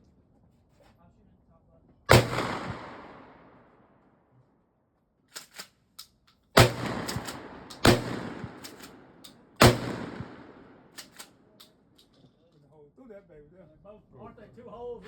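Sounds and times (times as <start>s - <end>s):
loud gunshots with echo: 2.1s - 3.6s, 6.6s - 11.0s.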